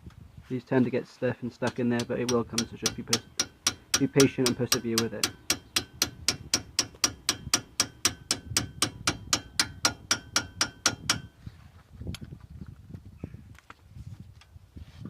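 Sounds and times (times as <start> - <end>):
hammer tapping steel bar: 1.7 - 11.3.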